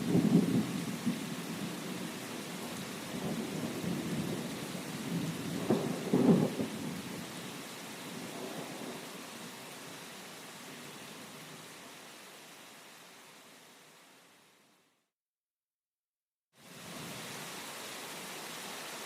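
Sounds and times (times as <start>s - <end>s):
rolling thunder: 0.0s - 2.0s, 3.1s - 7.1s
steady rain: 0.0s - 15.0s, 16.6s - 19.0s.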